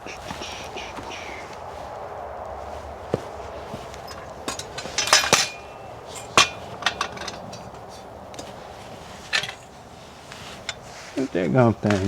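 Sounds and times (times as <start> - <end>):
metal tools clanking: 3.2 - 12.0.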